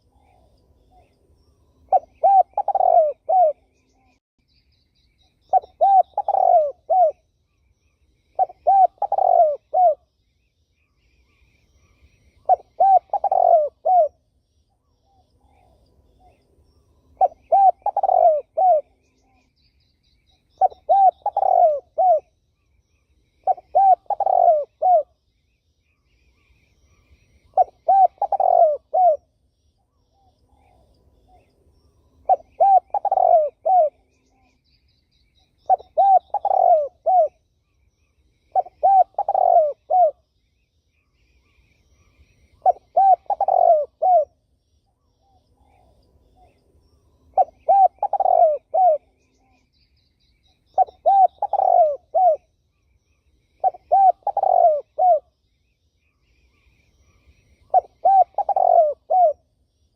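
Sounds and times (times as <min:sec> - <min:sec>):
faint high bird chirps: 0:00.0 - 0:59.9
dove cooing: 0:01.9 - 0:03.9, 0:05.5 - 0:07.2, 0:08.4 - 0:10.1, 0:12.4 - 0:14.2, 0:17.2 - 0:19.3, 0:20.5 - 0:22.3, 0:23.4 - 0:25.1, 0:27.5 - 0:29.3, 0:32.2 - 0:34.5, 0:35.6 - 0:37.4, 0:38.5 - 0:40.2, 0:42.0 - 0:44.4, 0:47.3 - 0:49.4, 0:50.7 - 0:52.5, 0:53.6 - 0:55.3, 0:57.0 - 0:59.4.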